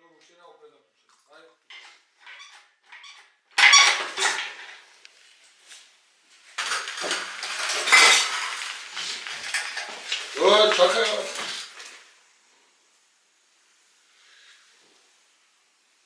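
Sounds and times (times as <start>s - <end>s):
metal tools clattering: 3.6s - 4.8s, 6.6s - 11.9s.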